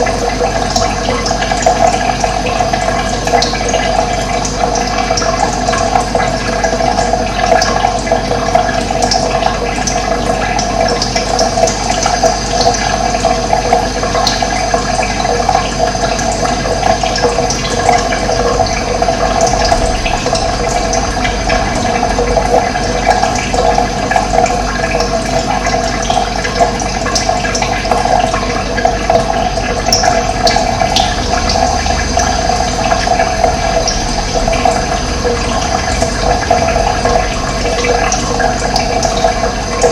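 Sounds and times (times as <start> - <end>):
running water flowing: 0.0 - 39.9.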